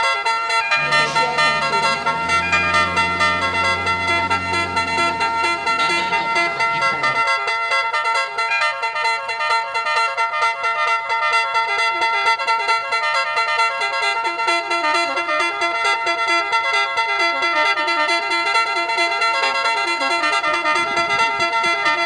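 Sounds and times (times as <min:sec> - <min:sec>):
instrumental background music: 0:00.7 - 0:07.7.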